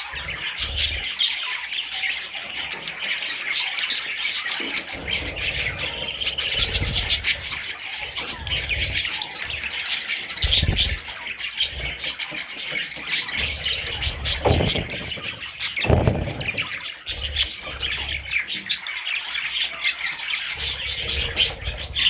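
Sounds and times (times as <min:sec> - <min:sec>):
budgerigars chattering and squawking: 0:00.0 - 0:22.0
low rumbles: 0:13.6 - 0:18.4.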